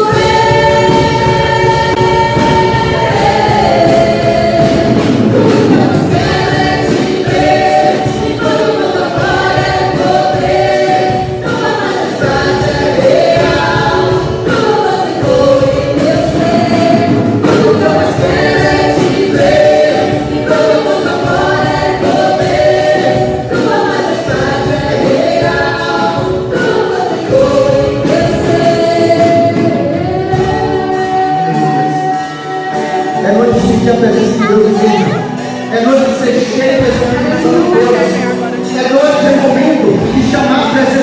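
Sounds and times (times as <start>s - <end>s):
choir singing gospel song: 0.0s - 41.0s.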